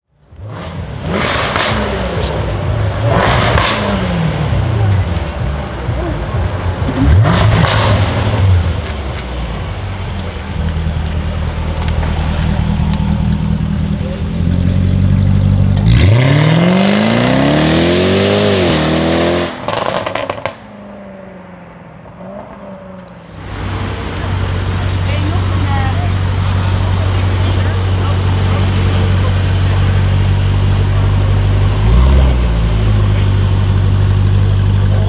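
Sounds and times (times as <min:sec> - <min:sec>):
exhaust crackles and pops: 0:00.1 - 0:17.6, 0:19.5 - 0:20.7, 0:22.4 - 0:35.0
car engine accelerating hard: 0:00.2 - 0:35.0.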